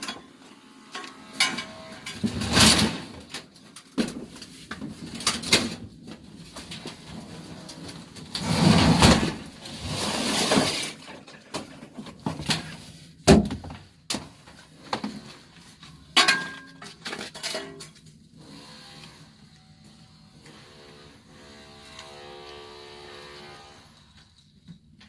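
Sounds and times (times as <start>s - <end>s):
scrap metal rattling clatter: 1.4s - 13.0s, 16.1s - 18.0s.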